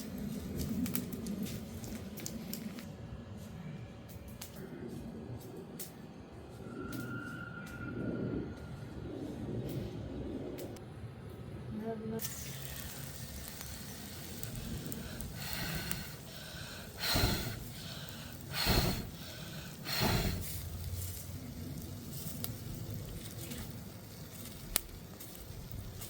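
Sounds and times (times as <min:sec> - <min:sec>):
wood fire crackling: 0:00.0 - 0:06.0, 0:12.2 - 0:26.0.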